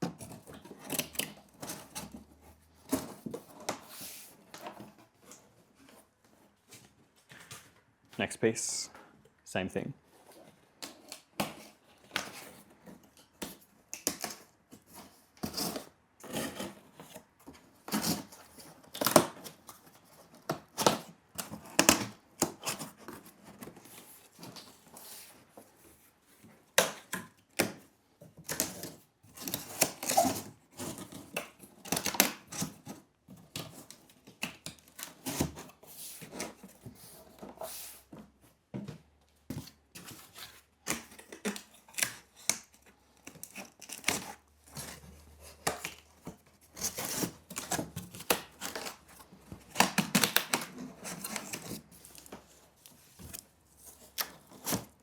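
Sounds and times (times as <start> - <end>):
cardboard scraping and creasing: 14.3 - 26.5, 39.6 - 55.0.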